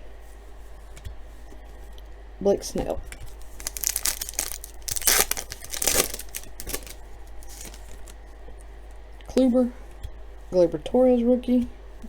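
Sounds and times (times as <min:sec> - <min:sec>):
wrapper tearing and crinkling: 0:03.3 - 0:08.2.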